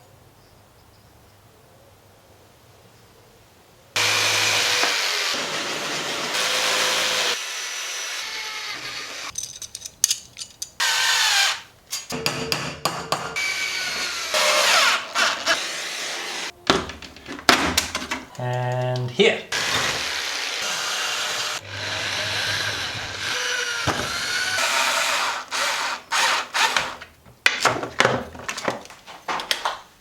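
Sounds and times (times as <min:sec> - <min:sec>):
power tool working aluminium: 0:04.0 - 0:09.4, 0:10.8 - 0:11.7, 0:13.4 - 0:16.5, 0:19.5 - 0:27.0.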